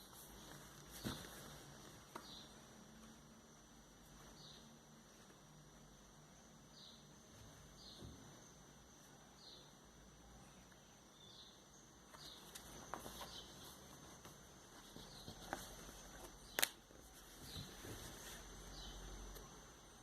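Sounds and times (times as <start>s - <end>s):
faint high whine: 0.0s - 20.0s
bird chirping: 10.7s - 13.8s.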